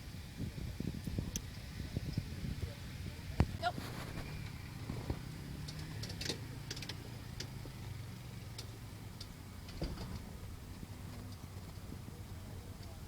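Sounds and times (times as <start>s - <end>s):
light clicks and ticks: 5.6s - 10.3s.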